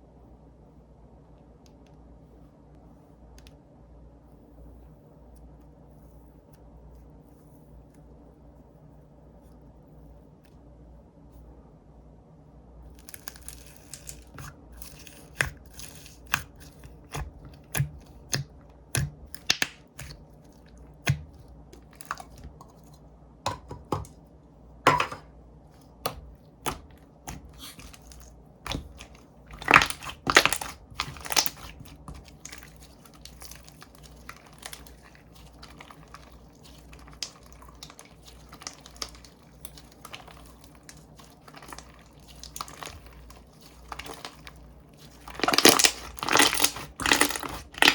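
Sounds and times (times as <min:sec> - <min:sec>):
slime clicking and popping: 0:13.0 - 0:20.2, 0:26.0 - 0:47.9.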